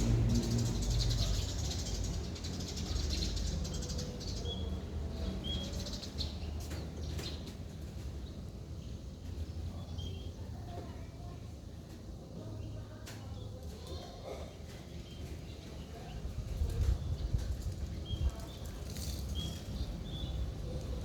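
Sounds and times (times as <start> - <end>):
small birds twittering: 0.0 - 21.0.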